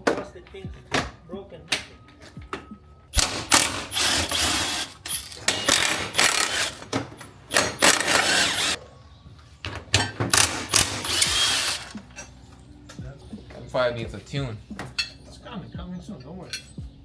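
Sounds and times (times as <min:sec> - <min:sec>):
ratchet turning fasteners: 0:03.2 - 0:08.8, 0:10.3 - 0:12.3.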